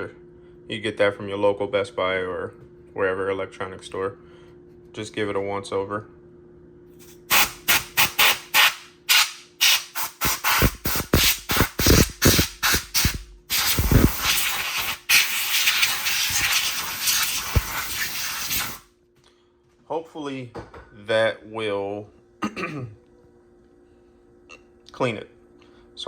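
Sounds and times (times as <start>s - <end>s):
compressed air spray hissing: 7.0s - 18.8s.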